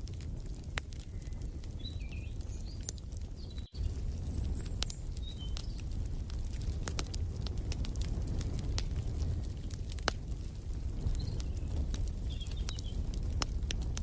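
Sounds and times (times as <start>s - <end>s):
wood fire crackling and popping: 0.0s - 14.0s
bird chirps: 1.1s - 3.9s.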